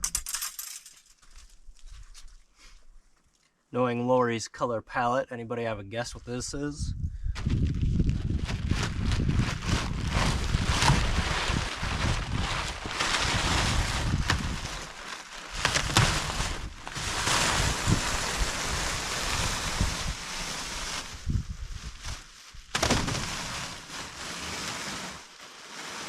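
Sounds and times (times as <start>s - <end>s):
wind buffeting microphone: 6.7s - 14.8s, 21.1s - 22.1s
clicks and crackles: 12.9s - 18.7s.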